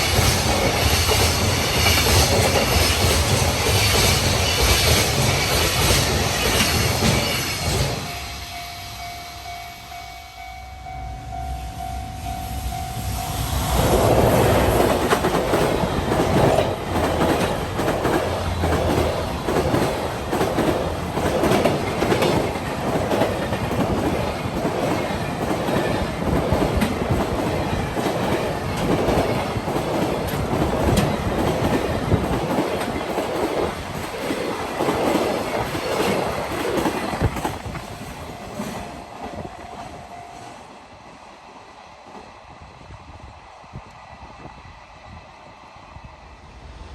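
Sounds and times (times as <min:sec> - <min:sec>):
level crossing alarm tone: 0:38.2 - 0:40.6.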